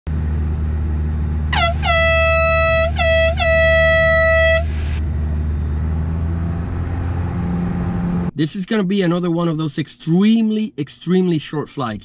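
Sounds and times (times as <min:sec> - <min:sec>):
low engine drone: 0:00.1 - 0:08.3
horn blasts: 0:01.5 - 0:05.0.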